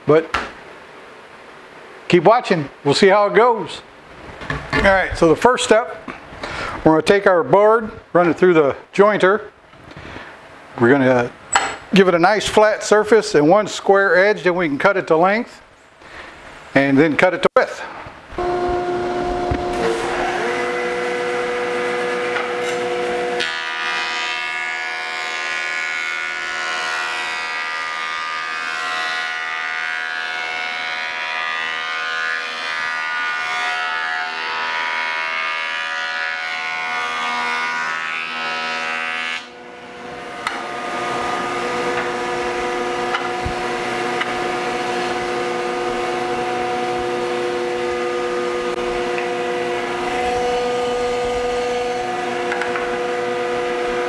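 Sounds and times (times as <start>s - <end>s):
jointer machine whining: 18.4s - 24.0s, 39.8s - 54.0s
board cutting on cutterhead: 18.4s - 24.5s, 40.2s - 54.0s.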